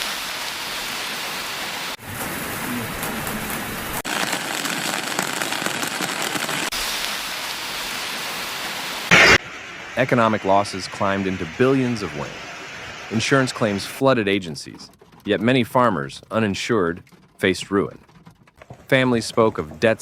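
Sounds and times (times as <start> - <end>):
heavy rain hissing: 0.0 - 14.0
short loud burst: 9.1 - 10.6.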